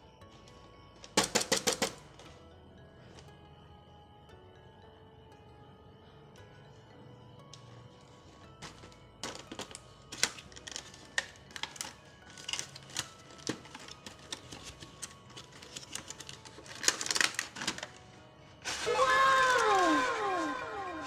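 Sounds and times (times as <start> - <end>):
plastic toy pieces clicking: 0.4 - 2.4, 8.6 - 18.8.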